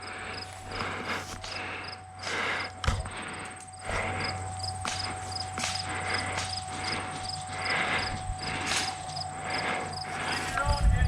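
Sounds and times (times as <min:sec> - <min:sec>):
crickets chirping: 0:00.0 - 0:11.0
high insect trill: 0:00.0 - 0:11.0.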